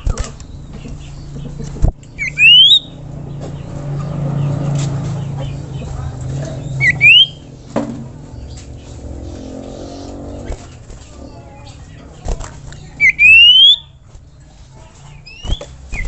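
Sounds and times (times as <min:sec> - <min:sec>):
songbird rising whistles: 0:02.2 - 0:02.9, 0:06.8 - 0:07.4.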